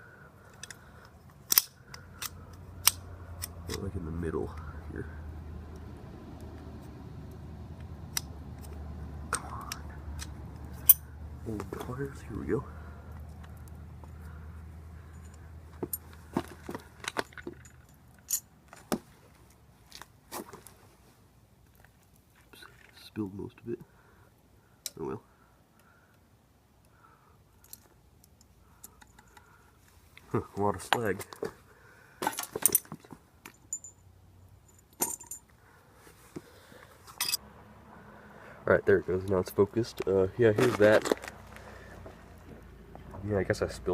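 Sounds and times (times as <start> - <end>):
low steady hum: 0.0 - 43.9
pliers clinking on metal: 0.5 - 3.9, 9.6 - 11.1, 17.0 - 18.5, 34.7 - 35.5, 37.1 - 37.4
metal tools clinking: 9.6 - 11.1, 15.1 - 18.8, 32.2 - 35.5, 37.1 - 37.4.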